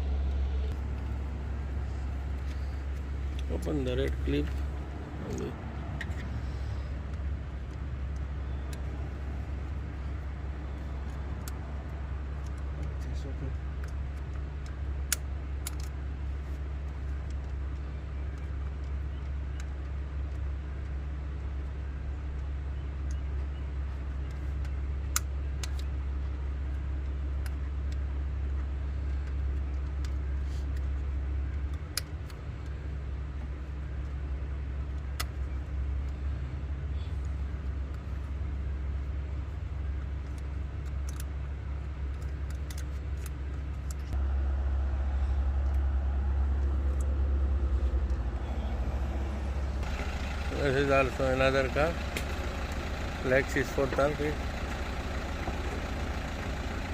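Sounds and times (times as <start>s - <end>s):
vehicle engine idling: 0.0s - 56.9s.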